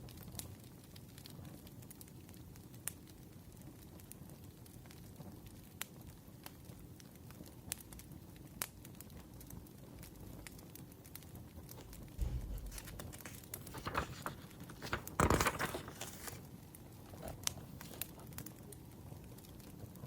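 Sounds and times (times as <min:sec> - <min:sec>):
paper rustling: 0:11.8 - 0:18.5
dull thump: 0:11.9 - 0:13.8.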